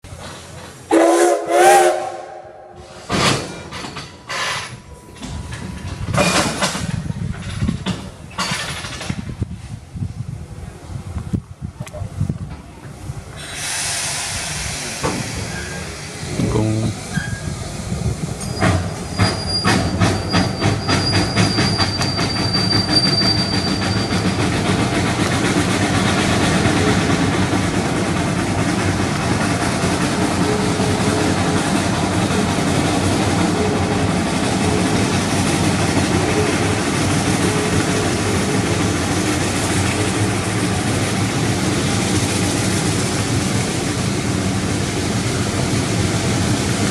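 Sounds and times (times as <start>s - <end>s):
steam locomotive exhaust chuffs: 12.9s - 46.9s.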